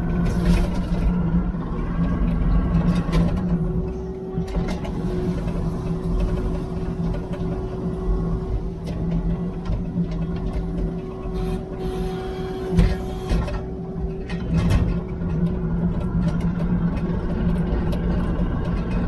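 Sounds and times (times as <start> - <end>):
diesel engine running: 0.0 - 19.0
knocks and clunks: 12.7 - 18.9.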